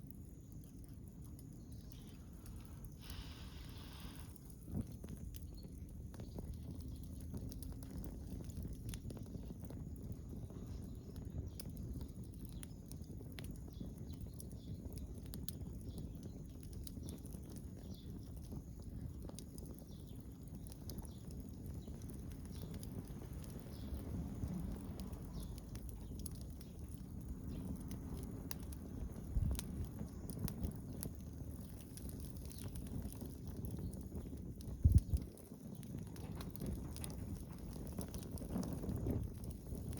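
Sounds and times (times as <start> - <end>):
low steady rumble: 0.0 - 9.6, 20.0 - 33.4, 34.1 - 39.9
wood fire crackling and popping: 0.0 - 39.9.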